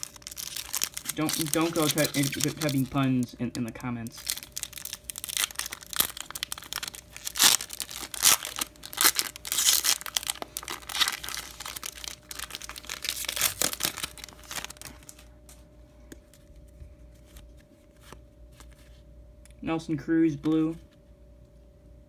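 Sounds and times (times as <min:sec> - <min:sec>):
foil wrapper crinkling and tearing: 0:00.0 - 0:15.3.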